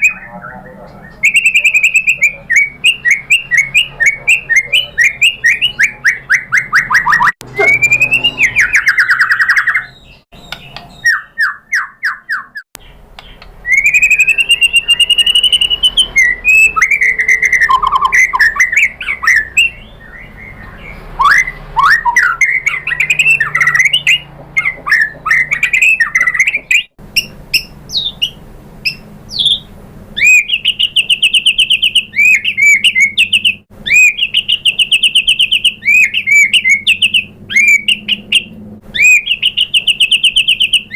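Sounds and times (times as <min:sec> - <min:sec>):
songbird trills and whistles: 0:00.0 - 0:40.9.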